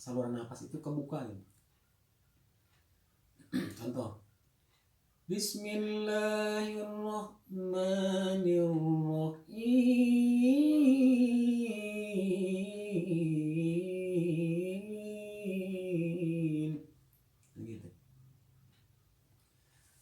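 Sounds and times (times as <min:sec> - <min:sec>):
man chanting melodic recitation: 0:05.3 - 0:16.8.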